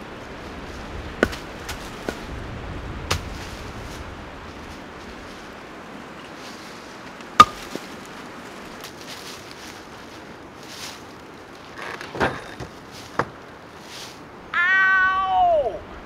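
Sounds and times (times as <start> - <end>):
firewood knocking: 1.2 - 2.3, 7.4 - 7.9.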